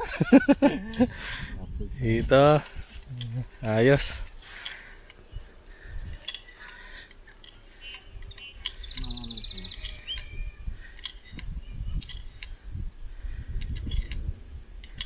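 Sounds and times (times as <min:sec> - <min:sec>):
birds chirping: 0:00.0 - 0:14.2
bird trill: 0:04.7 - 0:12.6.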